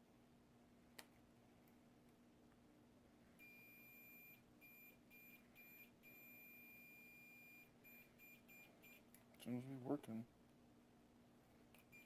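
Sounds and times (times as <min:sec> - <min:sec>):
high-pitched appliance beeps: 0:03.4 - 0:09.0.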